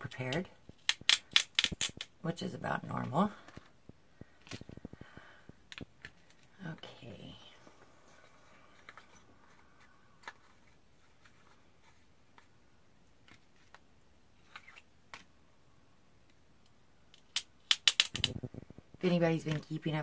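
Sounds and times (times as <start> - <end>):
plastic packaging clicking: 0.7 - 2.2, 17.1 - 18.4.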